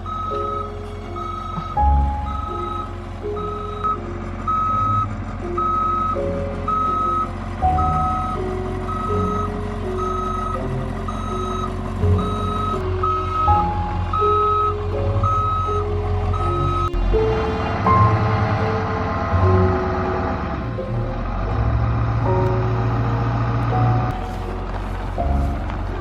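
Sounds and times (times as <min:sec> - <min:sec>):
high beeping: 0:00.0 - 0:18.3
slow melodic music: 0:00.0 - 0:26.0.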